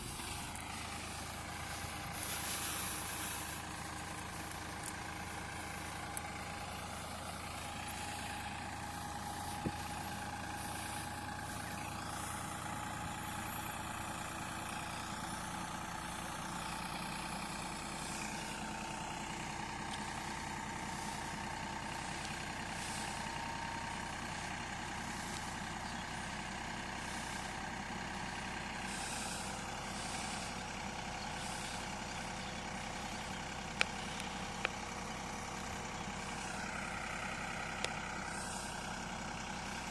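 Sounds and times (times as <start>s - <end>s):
steady whine: 0.0s - 23.2s
diesel engines running: 0.0s - 39.9s.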